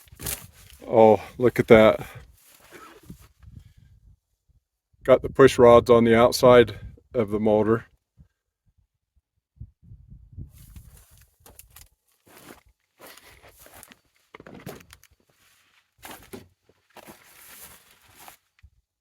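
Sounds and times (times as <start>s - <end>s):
footsteps walking: 10.7s - 18.5s.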